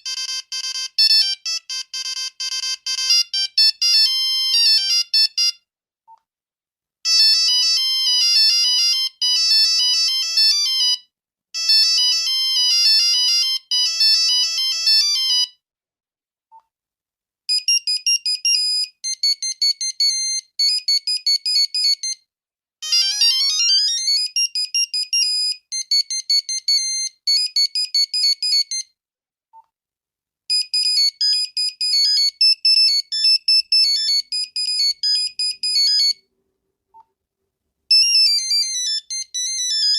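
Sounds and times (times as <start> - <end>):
monophonic ringtone beeps: 30.5 - 36.2, 37.9 - 39.9.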